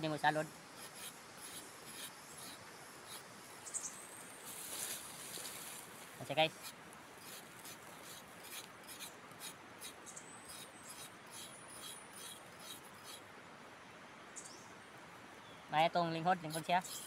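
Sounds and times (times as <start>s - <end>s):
dry leaves rustling: 3.8s - 8.7s.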